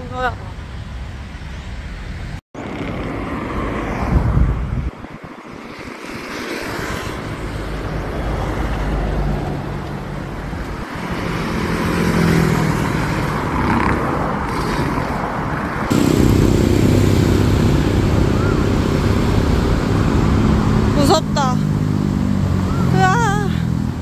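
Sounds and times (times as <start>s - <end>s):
road traffic: 0.0s - 24.0s
vehicle engine running: 15.9s - 24.0s.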